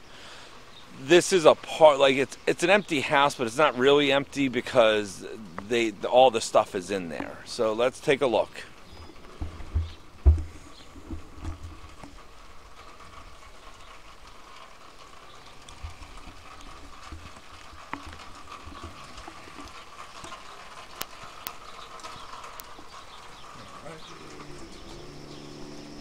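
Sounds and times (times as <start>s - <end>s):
footsteps dull thumps: 8.8s - 12.2s.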